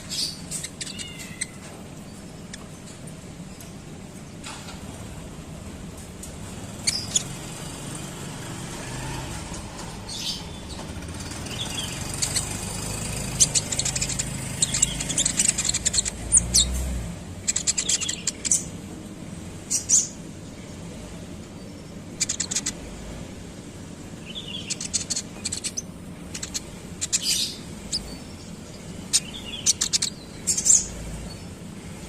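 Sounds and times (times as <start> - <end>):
bird chirping and trilling: 0.0 - 3.7, 6.6 - 18.8, 19.6 - 23.3, 24.0 - 32.0.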